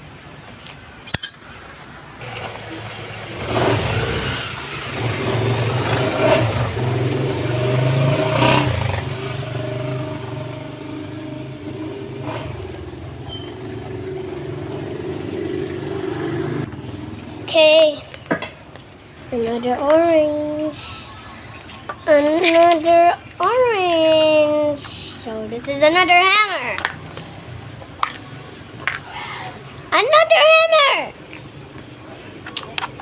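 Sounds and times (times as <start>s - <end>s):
sharp click: 1.1s - 1.5s.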